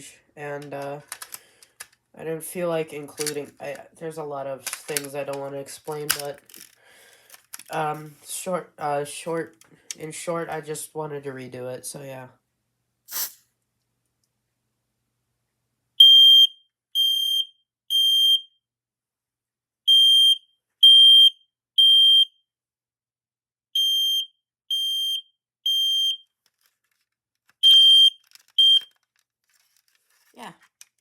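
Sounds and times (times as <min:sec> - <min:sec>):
smoke alarm beeping: 0:16.0 - 0:18.5, 0:19.9 - 0:22.3, 0:23.8 - 0:26.3, 0:27.6 - 0:28.9.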